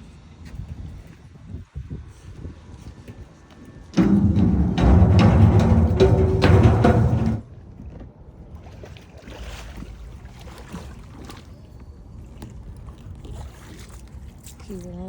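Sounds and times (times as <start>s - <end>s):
music with drums: 4.0s - 7.4s
low rumble: 4.0s - 7.6s
faint water sounds: 4.0s - 15.0s.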